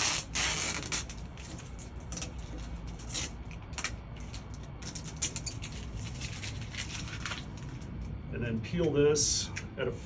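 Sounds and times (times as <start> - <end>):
tape peeling off glass: 0.0 - 7.8
tape crackling: 0.0 - 9.0.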